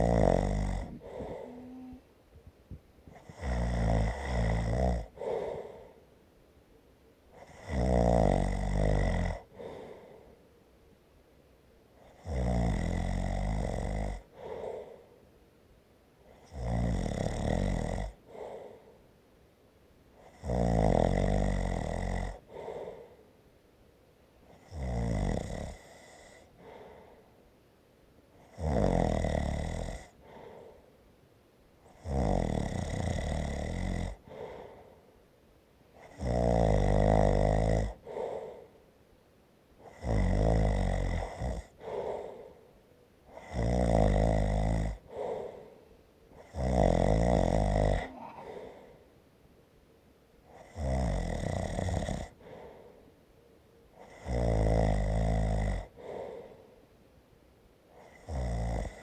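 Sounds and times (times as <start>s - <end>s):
loud rattling snore: 0.0s - 2.0s, 3.1s - 5.3s, 7.4s - 9.5s, 12.2s - 14.3s, 16.5s - 18.2s, 20.3s - 22.4s, 24.6s - 26.4s, 28.5s - 30.1s, 32.0s - 34.6s, 36.0s - 38.5s, 39.8s - 42.4s, 43.4s - 45.6s, 46.4s - 48.8s, 50.6s - 52.4s, 54.1s - 56.0s, 58.0s - 59.0s
soft breath sound: 0.0s - 7.5s, 9.4s - 12.1s, 14.2s - 16.5s, 18.1s - 20.4s, 22.3s - 24.7s, 25.9s - 28.5s, 30.0s - 32.0s, 34.1s - 36.2s, 37.9s - 39.9s, 41.2s - 43.5s, 44.9s - 46.6s, 47.4s - 50.7s, 52.2s - 54.3s, 55.8s - 58.3s.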